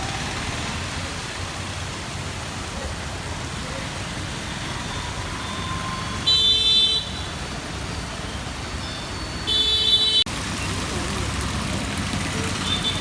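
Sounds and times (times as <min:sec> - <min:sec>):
road traffic noise: 0:00.0 - 0:13.0
vehicle horn blast: 0:09.5 - 0:10.3.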